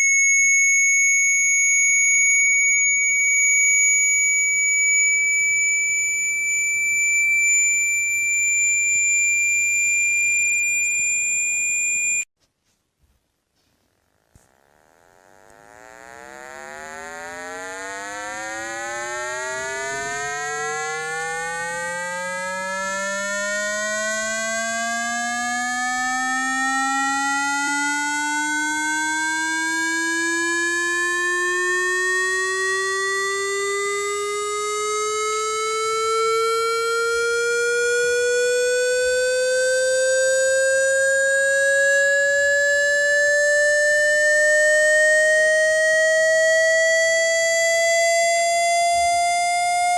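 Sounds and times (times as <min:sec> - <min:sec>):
buzzy tone sweeping upward: 0:01.5 - 0:12.2, 0:14.4 - 0:49.9.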